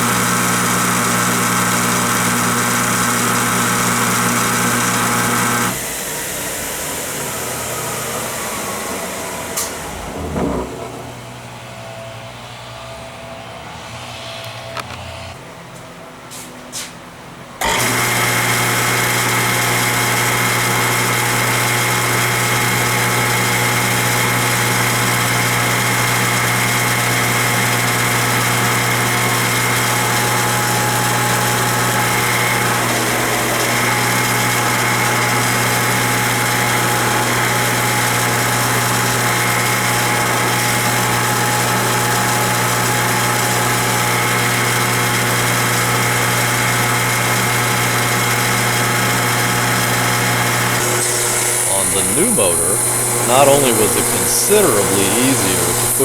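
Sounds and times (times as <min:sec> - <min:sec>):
table saw running: 0:00.0 - 0:11.5, 0:17.6 - 0:56.0.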